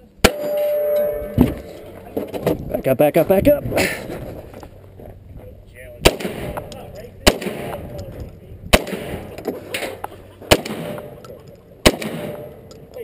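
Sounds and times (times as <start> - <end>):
gunshots with ringing tail: 0.2 - 2.2, 6.0 - 8.1, 8.7 - 12.7.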